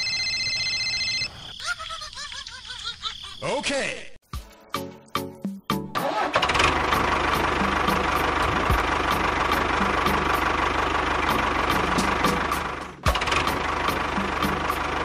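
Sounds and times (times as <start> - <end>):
engine starting and running: 5.9 - 15.0.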